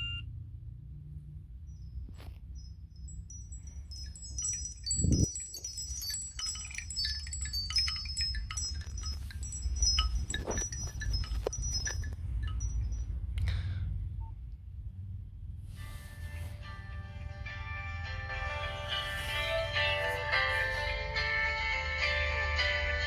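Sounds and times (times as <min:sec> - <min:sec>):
phone ringtone tinkling notes: 0:00.0 - 0:00.2, 0:02.8 - 0:13.2, 0:16.2 - 0:23.0.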